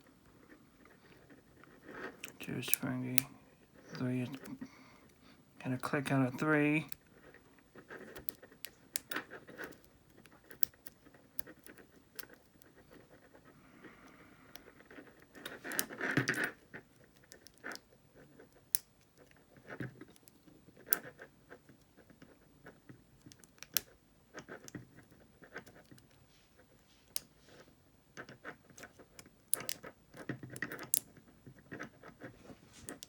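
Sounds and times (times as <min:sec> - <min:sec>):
lock pick clicking and scratching: 0:00.4 - 0:13.5, 0:14.1 - 0:26.2, 0:27.0 - 0:27.4, 0:28.2 - 0:33.0
lock pick scraping: 0:07.9 - 0:13.1, 0:28.3 - 0:31.1.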